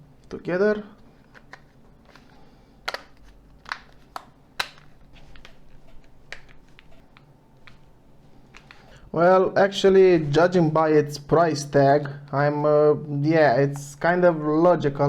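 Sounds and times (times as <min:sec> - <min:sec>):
plastic parts clicking: 0:01.2 - 0:09.0.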